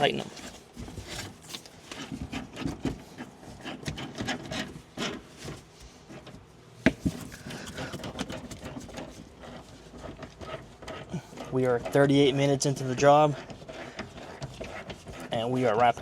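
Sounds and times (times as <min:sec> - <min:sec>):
hand tools scraping metal parts: 0:07.3 - 0:16.0.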